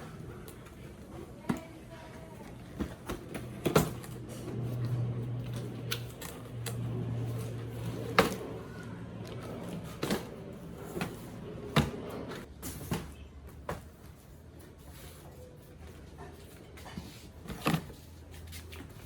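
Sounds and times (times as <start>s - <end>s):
low hum: 3.8s - 12.5s.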